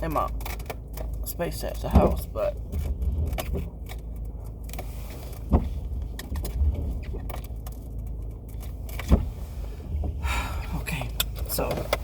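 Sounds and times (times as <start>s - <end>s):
car engine rumble: 0.0s - 12.0s
windshield wipers: 1.8s - 10.2s.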